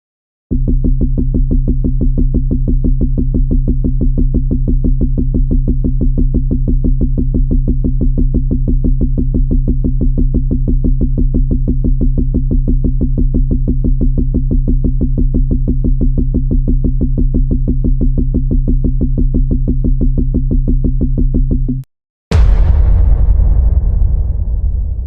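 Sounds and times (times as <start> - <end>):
pulsing low electronic buzz: 9.5 - 25.0
loud blast with rumbling tail: 22.3 - 25.0.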